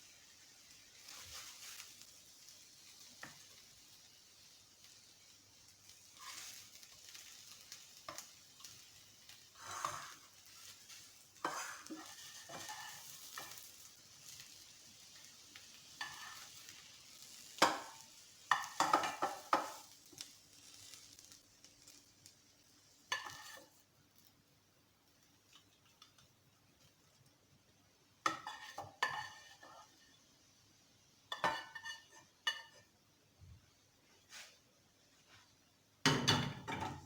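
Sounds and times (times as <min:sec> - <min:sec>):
faint oil sizzle: 0:00.0 - 0:37.0
spatula scraping frying pan: 0:05.8 - 0:21.1, 0:23.1 - 0:23.8, 0:28.2 - 0:30.2, 0:31.3 - 0:32.9.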